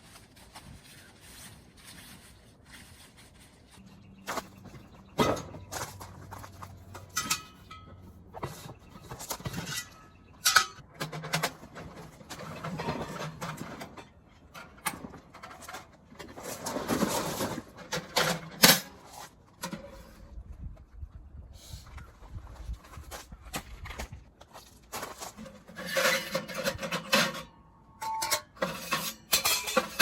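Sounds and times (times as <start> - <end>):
rustling: 0.0 - 4.9.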